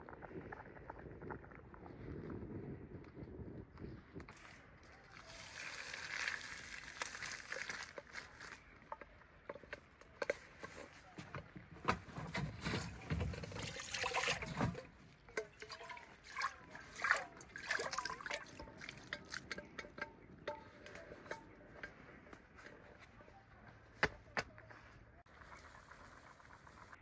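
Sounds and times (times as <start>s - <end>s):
water pouring and sloshing: 4.3s - 21.4s.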